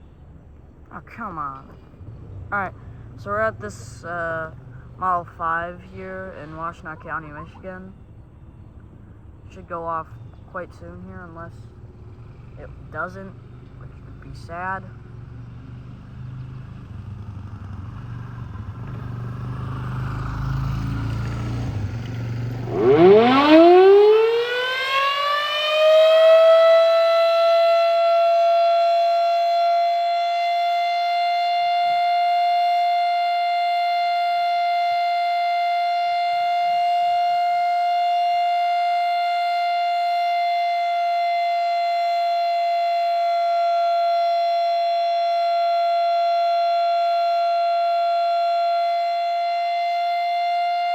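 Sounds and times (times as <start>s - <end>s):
warning siren wail: 9.5s - 50.9s.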